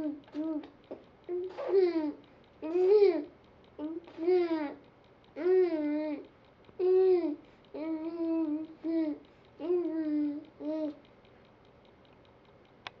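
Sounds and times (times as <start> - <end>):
child humming: 1.3 - 4.8, 5.4 - 6.2, 6.8 - 11.0.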